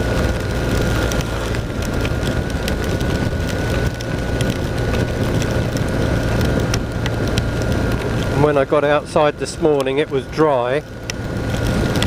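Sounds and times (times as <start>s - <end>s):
motorcycle engine drone: 0.0s - 12.0s
rain ticking on microphone: 0.0s - 12.0s
wind rush: 0.0s - 12.0s.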